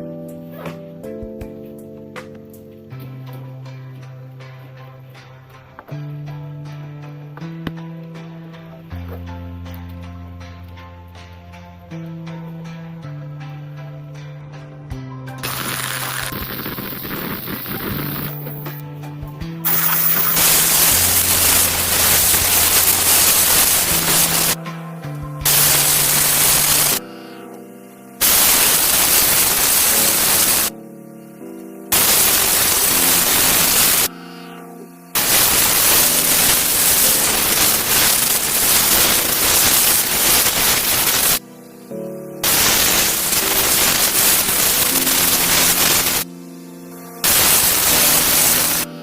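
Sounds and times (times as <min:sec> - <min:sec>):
background music: 0:00.0 - 0:49.0
loud even hissing: 0:15.4 - 0:18.8, 0:19.6 - 0:24.6, 0:25.4 - 0:49.0.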